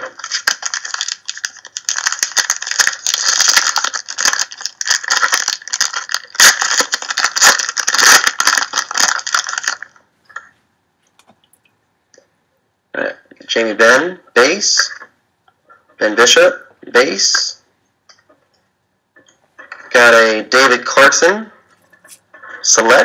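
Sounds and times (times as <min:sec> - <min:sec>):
plastic foil wrapper crinkling: 0:00.0 - 0:10.5.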